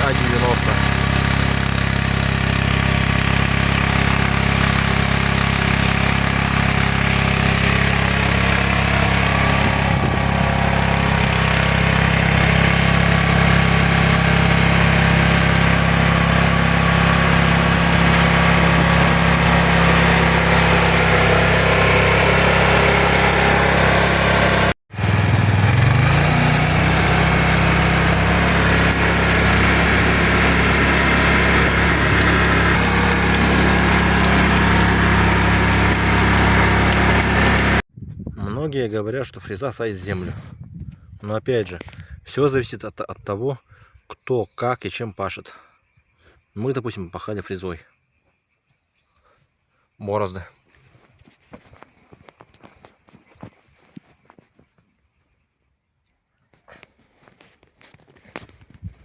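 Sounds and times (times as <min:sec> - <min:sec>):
tractor engine running under load: 0:00.0 - 0:37.8.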